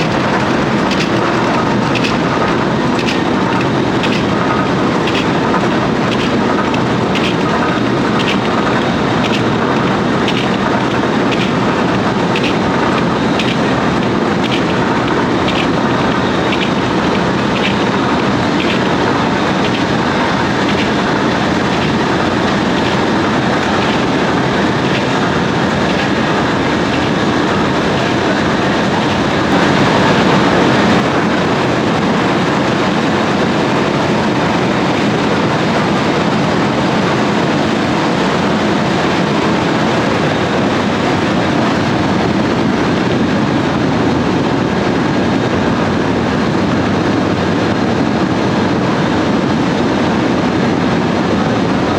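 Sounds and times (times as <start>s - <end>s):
harvesting machinery clattering: 0.0s - 31.3s.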